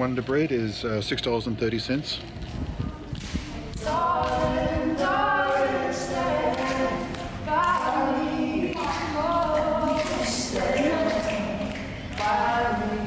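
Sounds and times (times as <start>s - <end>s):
voices singing in harmony: 3.7s - 13.0s.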